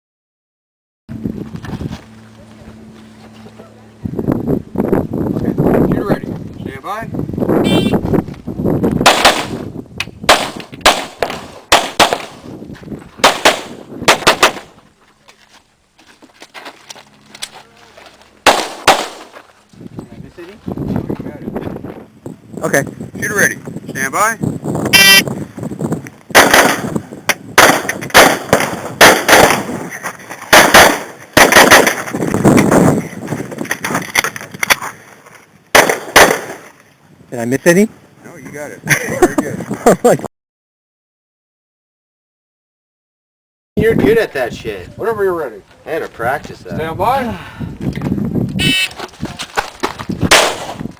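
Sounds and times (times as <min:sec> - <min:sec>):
pistol firing: 0:09.0 - 0:09.6, 0:10.3 - 0:12.4, 0:13.2 - 0:14.7, 0:18.4 - 0:19.3, 0:26.3 - 0:27.0, 0:27.6 - 0:29.8, 0:30.5 - 0:32.0, 0:35.8 - 0:36.7, 0:50.3 - 0:50.8.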